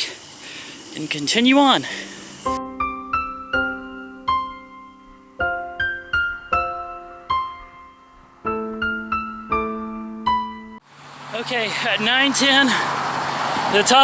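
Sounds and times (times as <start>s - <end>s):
piano music: 1.6s - 10.8s.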